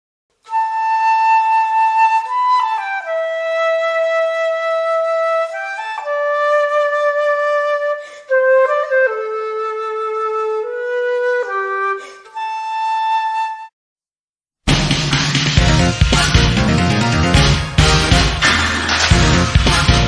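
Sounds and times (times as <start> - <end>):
slow flute-like wind melody: 0.5 - 13.7.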